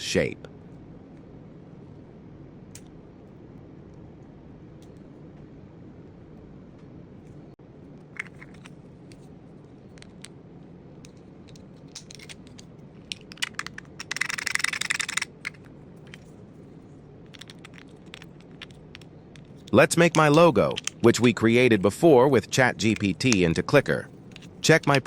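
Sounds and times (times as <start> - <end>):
plastic parts clicking: 8.2 - 8.7, 11.5 - 16.3, 17.3 - 21.4, 24.3 - 25.0
rapid clicking burst: 13.4 - 15.7.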